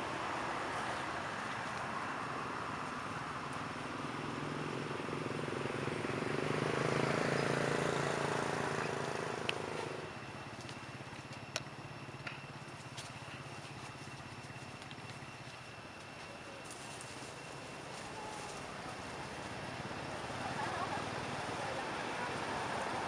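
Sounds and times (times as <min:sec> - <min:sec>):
vehicle engine passing by: 0:00.0 - 0:10.2, 0:18.0 - 0:23.0.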